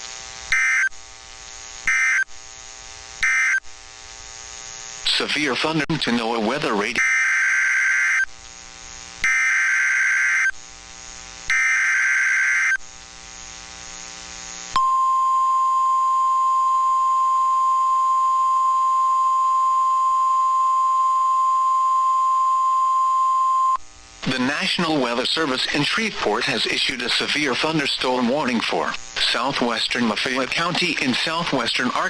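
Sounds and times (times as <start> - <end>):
steady warning alarm tone: 0.5 - 0.9, 1.9 - 2.3, 3.2 - 3.7, 6.8 - 8.3, 9.2 - 10.6, 11.5 - 12.8.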